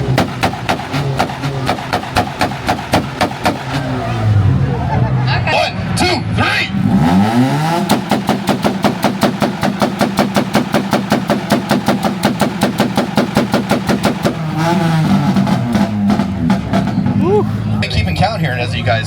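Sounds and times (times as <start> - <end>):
rapid exhaust pops and bangs: 0.0 - 4.2, 6.8 - 17.8
car engine revving: 0.0 - 19.0.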